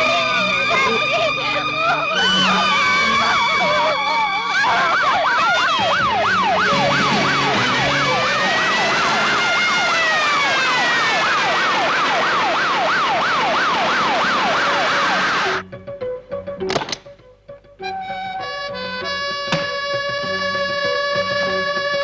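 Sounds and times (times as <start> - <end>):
wailing siren: 0.0 - 15.6
yelping siren: 0.0 - 15.6.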